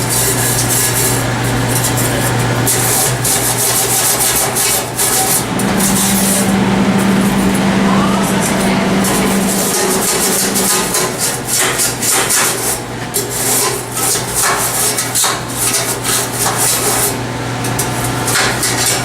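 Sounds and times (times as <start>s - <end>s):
scrubbing inside metal fryer vat: 0.0s - 19.0s
steady low hum: 1.3s - 13.1s.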